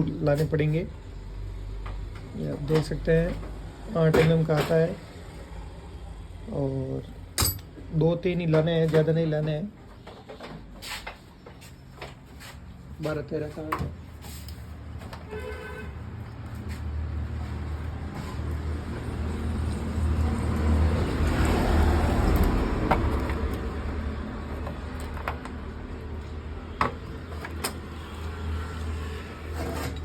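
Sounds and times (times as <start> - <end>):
vehicle engine noise: 16.2 - 30.0.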